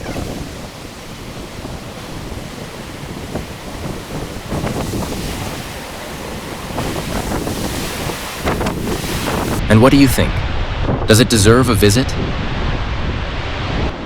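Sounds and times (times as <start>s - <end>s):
waterfall roaring: 0.0s - 9.6s
wind buffeting microphone: 0.0s - 14.0s.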